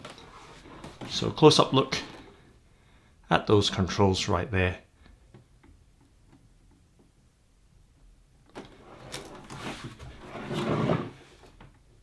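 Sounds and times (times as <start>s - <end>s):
plastic appliance rustling and scraping: 8.6s - 11.7s.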